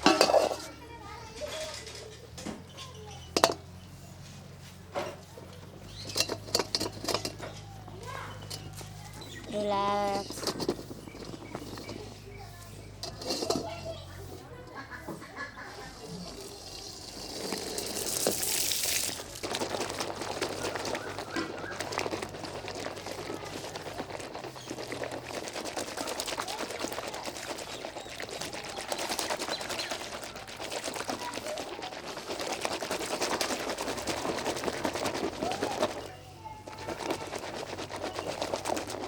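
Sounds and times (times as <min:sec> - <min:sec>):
soapy foam crackling: 0:15.7 - 0:39.0
water splashing: 0:15.8 - 0:39.0.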